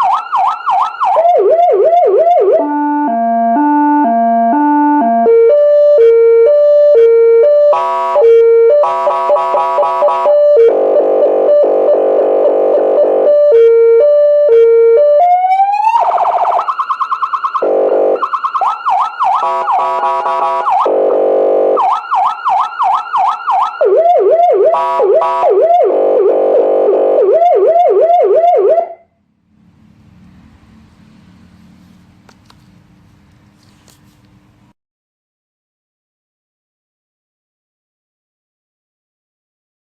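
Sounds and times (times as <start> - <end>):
electronic siren cycling tones: 0.0 - 31.8.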